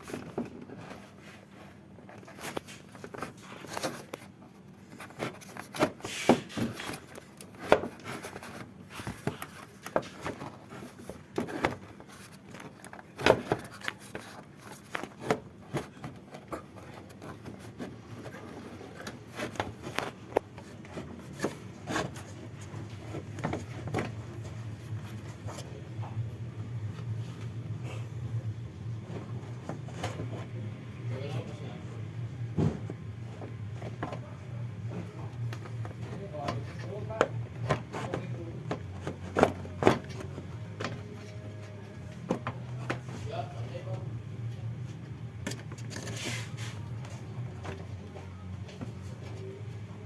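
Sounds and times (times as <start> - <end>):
knocks and scraping on car parts: 4.9 - 25.8, 32.5 - 43.3
low steady hum: 8.1 - 50.0.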